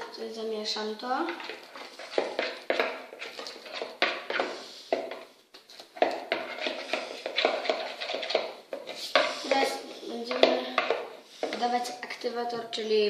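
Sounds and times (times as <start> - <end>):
spoon clinking and scraping bowl: 1.3 - 5.2, 6.0 - 11.6.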